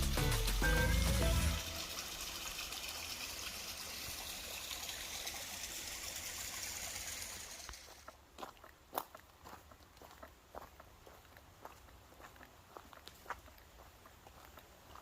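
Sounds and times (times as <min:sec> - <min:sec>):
stream running: 0:00.0 - 0:08.7.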